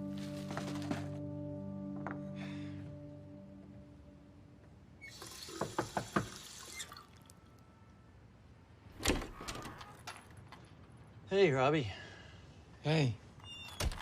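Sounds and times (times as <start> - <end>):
running water hiss: 5.0 - 7.3.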